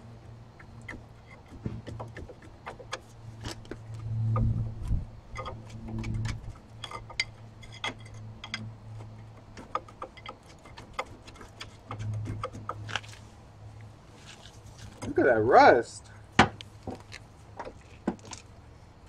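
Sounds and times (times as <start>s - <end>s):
low hum: 3.1s - 9.6s
hand tools clicking on metal: 5.3s - 13.0s.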